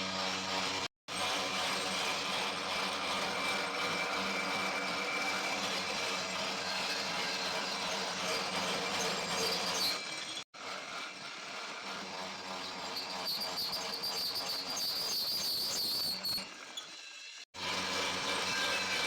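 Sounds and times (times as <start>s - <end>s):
workshop machinery running: 17.6s - 19.0s.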